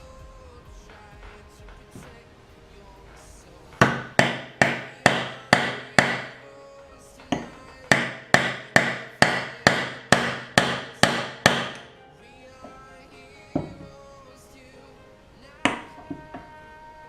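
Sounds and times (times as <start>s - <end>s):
hammer striking metal driver: 3.8s - 6.4s, 7.2s - 11.9s.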